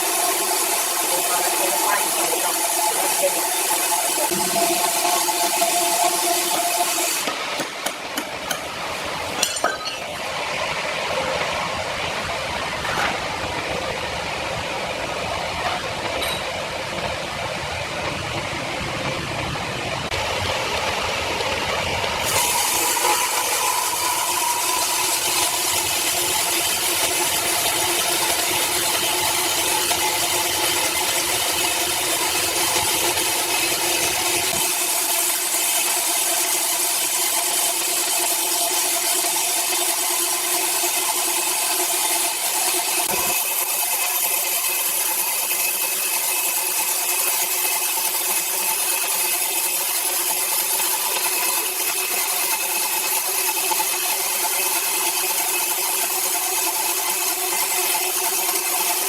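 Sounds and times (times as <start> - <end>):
power saw cutting timber: 0.0 - 59.0.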